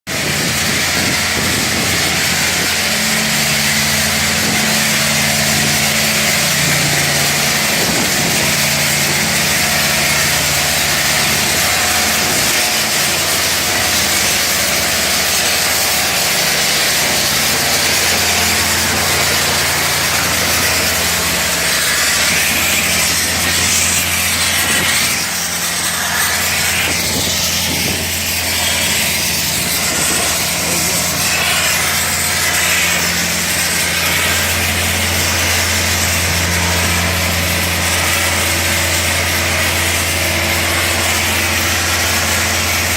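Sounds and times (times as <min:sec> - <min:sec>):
low engine-like hum: 0:00.1 - 0:42.9
steady mechanical hiss: 0:00.3 - 0:42.9.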